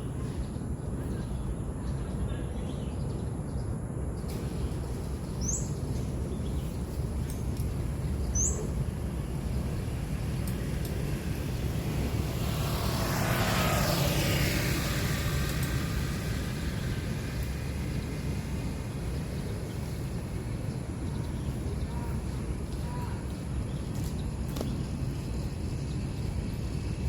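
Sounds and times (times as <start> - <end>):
steady low rumble: 0.0 - 27.0
vehicle passing by: 4.3 - 27.0
bird chirping: 5.4 - 10.5, 17.7 - 26.8.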